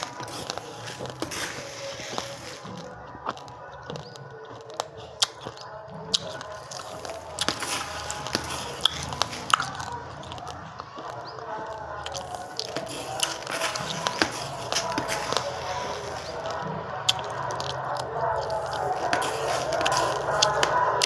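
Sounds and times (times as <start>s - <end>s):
faint background music: 0.0s - 21.0s
rice grains crunched by chewing: 0.0s - 21.0s.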